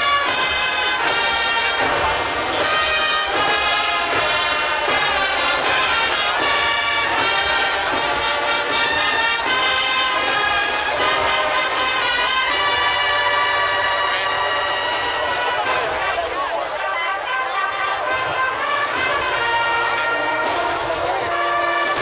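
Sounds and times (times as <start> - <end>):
brass band playing slow march: 0.0 - 22.0.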